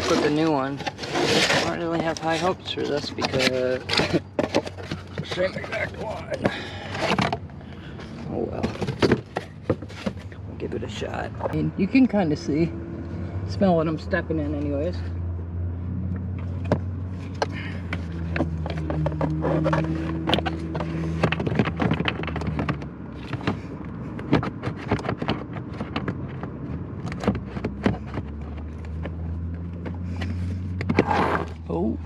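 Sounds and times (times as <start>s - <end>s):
plastic part clicks and knocks: 17.4s - 23.6s.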